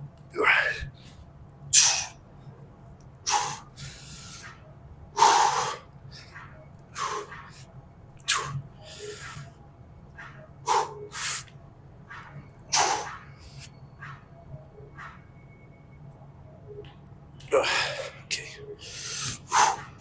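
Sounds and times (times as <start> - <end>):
faint low hum: 0.0 - 20.0
sharp forceful breathing: 1.8 - 2.2, 3.3 - 4.6, 5.2 - 9.6, 10.2 - 11.5, 12.6 - 13.7, 18.8 - 20.0.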